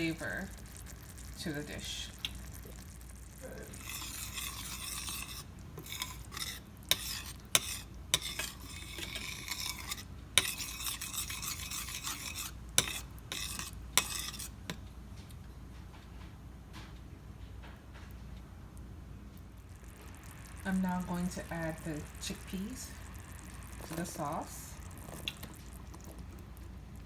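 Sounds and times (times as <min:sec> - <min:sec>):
utensil scraping in pan: 0:00.0 - 0:14.8, 0:19.7 - 0:26.4.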